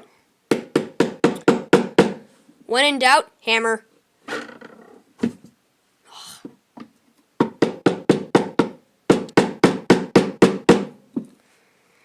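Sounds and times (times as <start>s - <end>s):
hammer knocking on wooden box: 0.5s - 2.2s, 7.4s - 11.0s.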